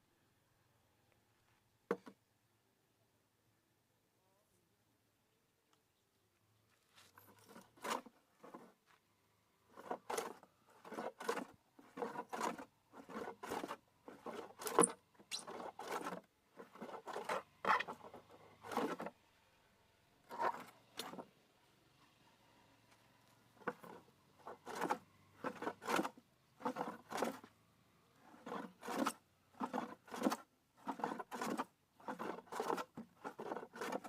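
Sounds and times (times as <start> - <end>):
scraping strokes on wood: 7.2 - 8.8, 9.7 - 19.2, 20.3 - 21.3, 23.6 - 27.5, 28.2 - 34.0.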